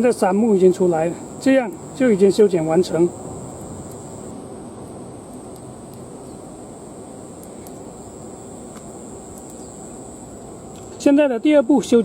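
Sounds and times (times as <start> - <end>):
thin high-pitched whine: 0.0 - 12.0.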